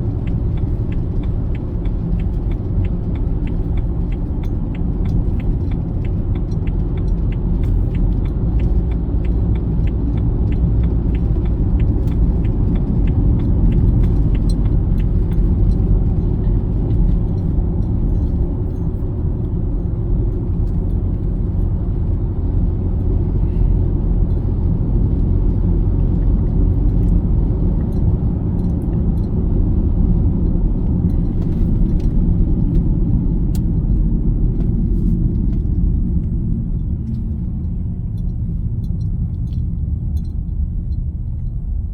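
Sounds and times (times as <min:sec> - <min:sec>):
regular ticking: 0:00.0 - 0:16.2
car cabin road rumble: 0:00.0 - 0:41.9.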